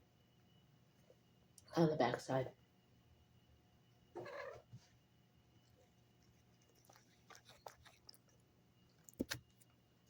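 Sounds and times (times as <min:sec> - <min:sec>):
mouth clicks and smacks: 0:06.7 - 0:08.4, 0:09.0 - 0:09.7.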